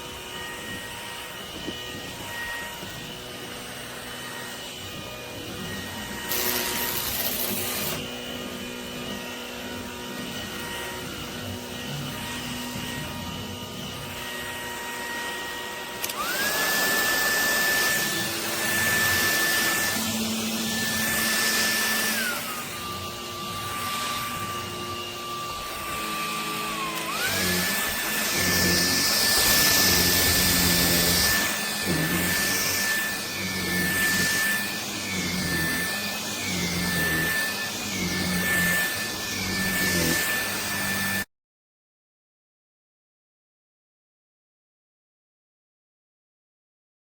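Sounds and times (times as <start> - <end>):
stick vacuum whining: 0.0 - 41.3.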